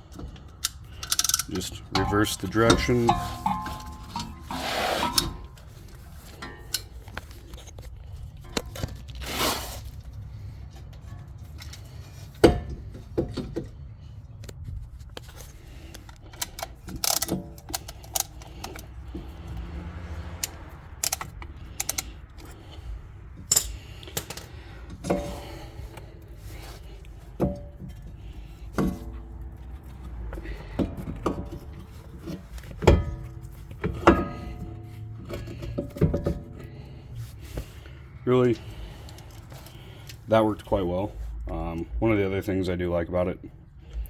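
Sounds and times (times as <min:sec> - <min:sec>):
metal tool clicking and clanking: 0:00.0 - 0:09.1, 0:15.3 - 0:22.8, 0:23.4 - 0:28.1.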